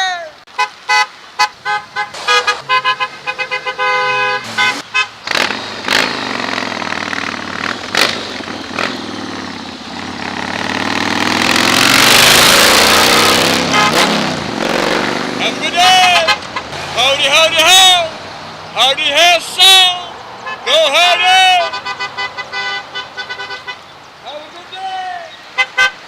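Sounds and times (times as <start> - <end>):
vehicle horn beeping: 0.5 - 5.4, 13.6 - 14.2, 16.0 - 17.1, 20.4 - 23.9, 25.6 - 26.0
passing vehicle engine: 1.8 - 20.4.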